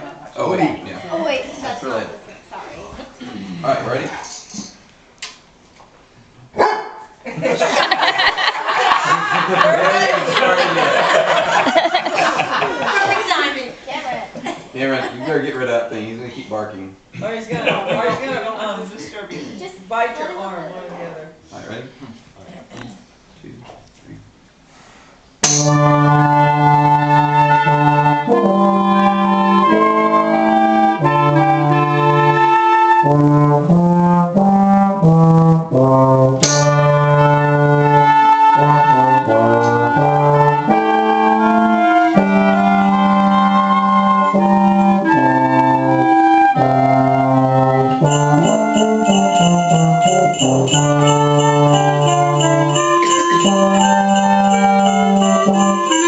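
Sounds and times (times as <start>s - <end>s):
small ensemble playing slow tune: 7.2s - 22.2s, 23.8s - 56.0s
percussion steady rhythm: 25.4s - 27.2s, 36.4s - 37.4s, 47.9s - 56.0s.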